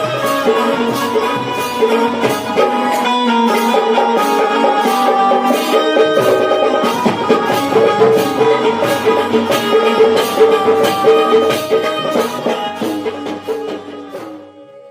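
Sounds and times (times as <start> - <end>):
drums in brisk rhythm: 0.0 - 14.8
sustained instrumental tones: 0.0 - 14.9.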